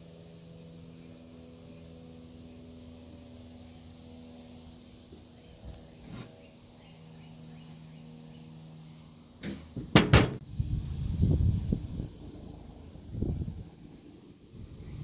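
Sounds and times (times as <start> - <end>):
sharp loud knocks: 9.4 - 10.4.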